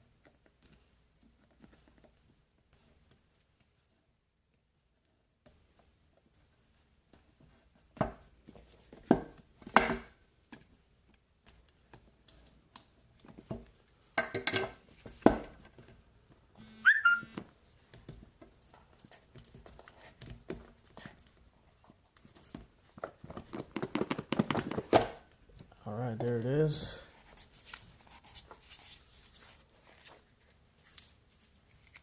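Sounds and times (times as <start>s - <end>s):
brief squeak: 16.6s - 17.4s.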